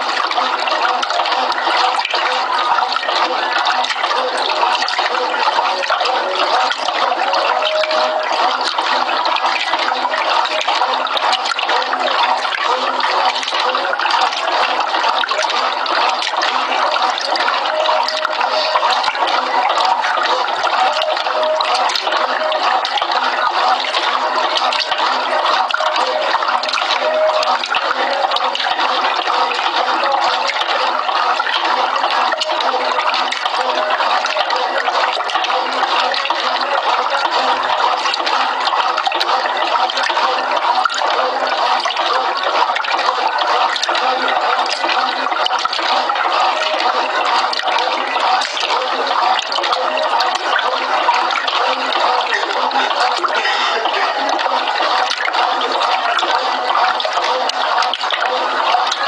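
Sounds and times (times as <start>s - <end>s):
washing machine agitating: 0.0s - 59.0s
water sloshing and churning: 0.0s - 59.0s.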